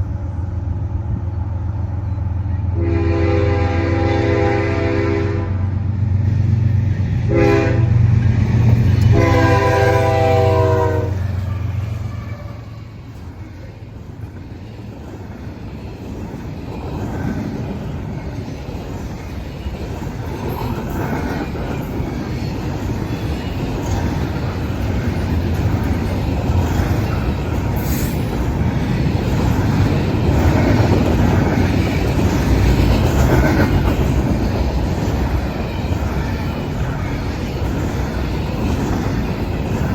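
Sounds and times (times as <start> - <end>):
train wheel and rail noise: 0.0 - 39.9
locomotive air horn blasts: 2.8 - 5.7, 7.3 - 8.0, 9.1 - 12.7.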